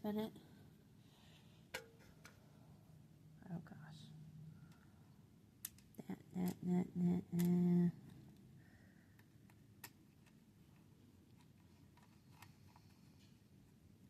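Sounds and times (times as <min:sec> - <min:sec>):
woman humming: 0:06.0 - 0:08.1.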